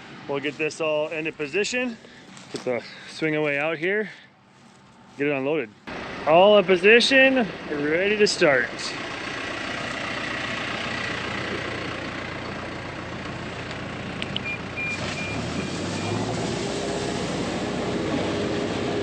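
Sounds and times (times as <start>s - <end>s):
heavy farm engine running: 4.5s - 19.0s.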